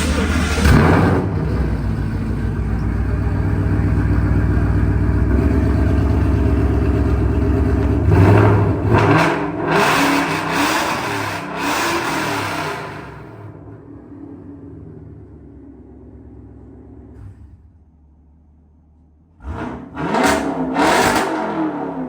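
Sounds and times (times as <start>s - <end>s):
car engine idling rumble: 0.0s - 9.0s, 13.2s - 19.9s
car engine revving: 0.0s - 17.9s, 19.3s - 22.0s.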